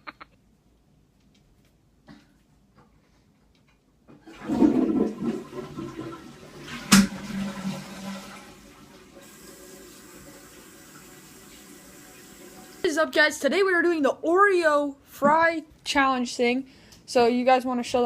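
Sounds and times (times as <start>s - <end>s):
toilet flushing: 4.1s - 13.0s.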